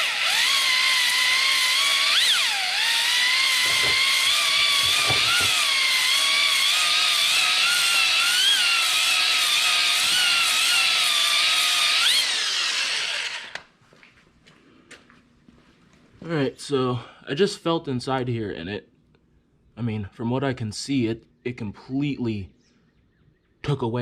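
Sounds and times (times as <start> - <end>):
electric drill motor whining: 0.0 - 13.7.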